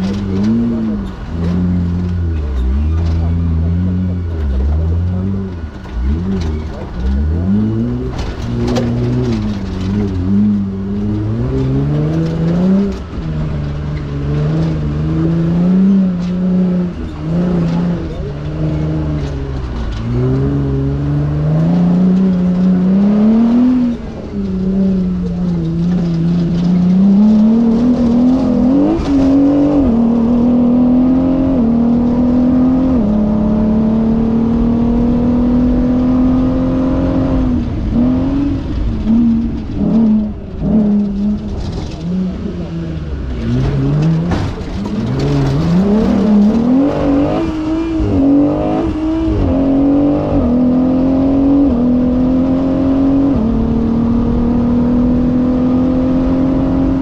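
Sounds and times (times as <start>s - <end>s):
knocks and clatter: 0.0s - 31.3s, 37.3s - 49.7s
race vehicle engine revving: 0.0s - 57.0s.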